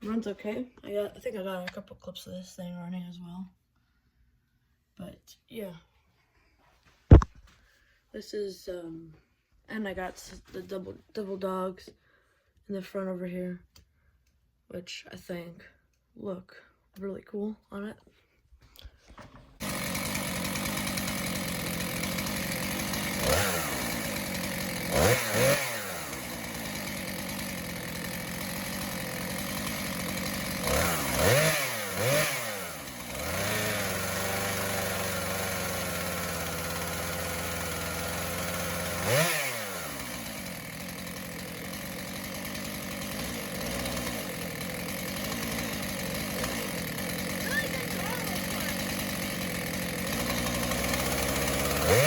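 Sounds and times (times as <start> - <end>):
chainsaw idling with throttle blips: 19.6 - 52.0.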